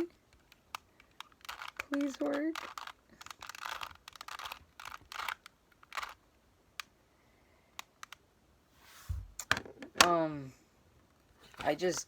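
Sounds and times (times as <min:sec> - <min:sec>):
puzzle cube twisting clicks: 0:00.2 - 0:07.0, 0:07.7 - 0:08.2.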